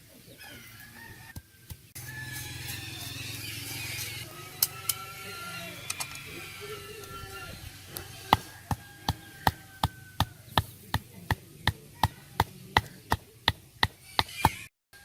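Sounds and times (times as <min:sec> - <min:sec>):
rhythmic chopping: 0:07.7 - 0:14.7.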